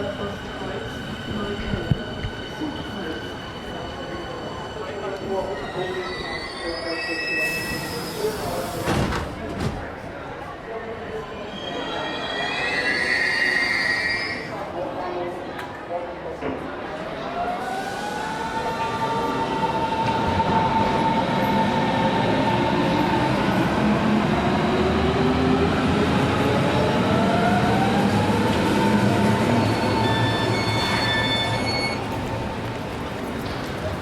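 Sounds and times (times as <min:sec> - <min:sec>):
train wheels on rails: 0:17.7 - 0:34.0.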